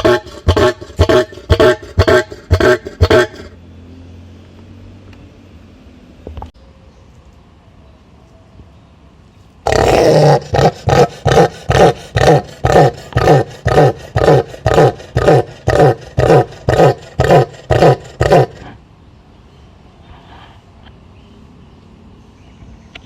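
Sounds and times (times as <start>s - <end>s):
large animal roaring: 9.6s - 18.8s.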